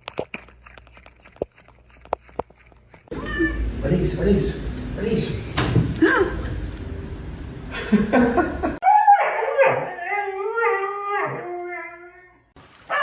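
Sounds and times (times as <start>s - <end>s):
dog howling: 8.8s - 12.4s.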